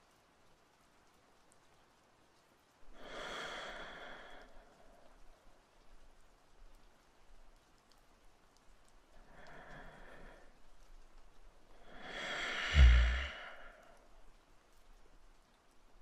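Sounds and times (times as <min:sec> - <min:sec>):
man breathing: 0:11.8 - 0:14.0.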